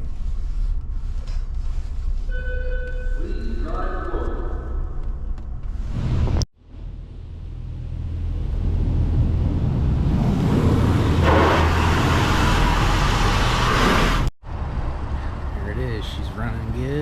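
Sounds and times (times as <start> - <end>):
engine running: 5.1 - 17.0
rushing noise: 7.6 - 15.6.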